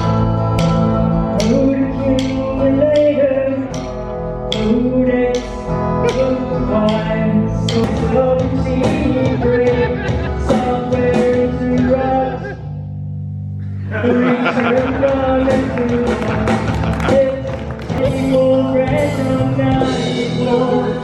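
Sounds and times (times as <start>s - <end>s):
person singing: 0.0s - 12.7s, 13.8s - 21.0s
bass guitar: 0.0s - 21.0s
electric guitar: 13.5s - 21.0s
steady drum beat: 14.3s - 20.7s.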